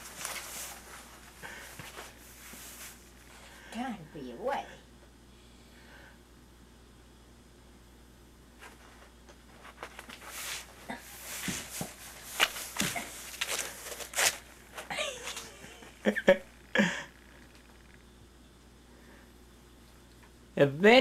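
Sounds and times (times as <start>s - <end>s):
cat rustling in cardboard box: 0.0s - 3.1s, 9.6s - 14.4s.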